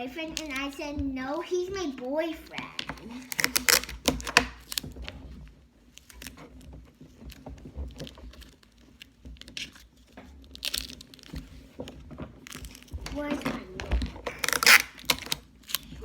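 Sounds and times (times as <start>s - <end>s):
small clicks and taps: 0.2s - 5.2s
paper rustling and crinkling: 2.4s - 16.0s.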